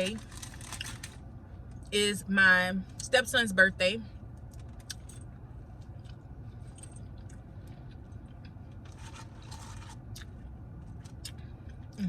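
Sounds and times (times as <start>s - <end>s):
low steady hum: 0.0s - 12.0s
person chewing food: 7.0s - 12.0s.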